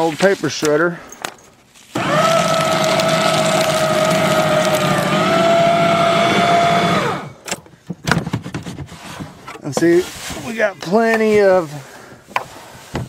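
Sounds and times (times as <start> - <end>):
paper being cut: 2.0 - 6.0
paper shredder motor whine: 2.0 - 7.4.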